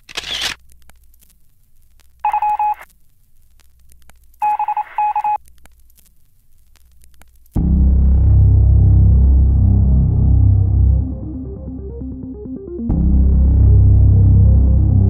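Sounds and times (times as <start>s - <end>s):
electronic telephone beeping: 2.2s - 2.8s, 4.4s - 5.4s
loud music: 7.6s - 15.0s.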